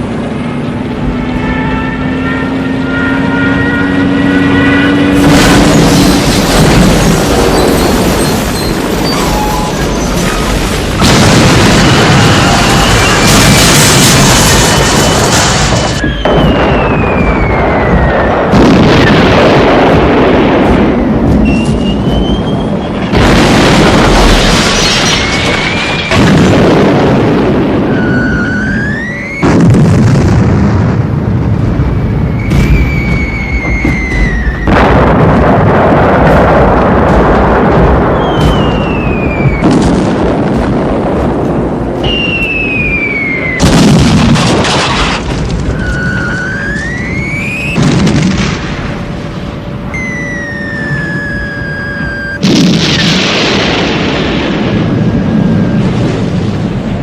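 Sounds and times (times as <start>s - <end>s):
bomb blasts: 0.0s - 57.0s
rumble of explosions: 0.0s - 57.0s
high falling bomb whistle: 15.6s - 19.1s, 20.9s - 23.1s, 27.8s - 29.8s, 32.0s - 35.2s, 38.0s - 39.8s, 42.0s - 43.7s, 45.6s - 48.1s, 49.9s - 53.2s.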